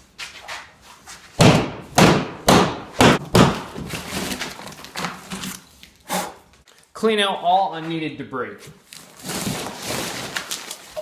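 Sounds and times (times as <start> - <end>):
heavy blows smashing drywall: 1.4 - 4.6.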